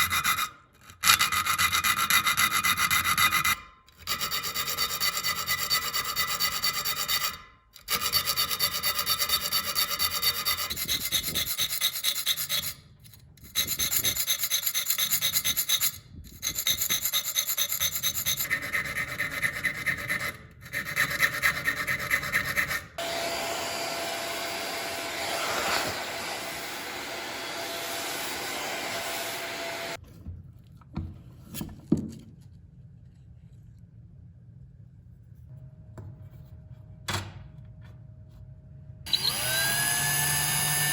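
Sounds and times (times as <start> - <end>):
rasping abrasive strokes on steel: 0.0 - 30.0
steady scraping with faint hum: 32.4 - 37.0.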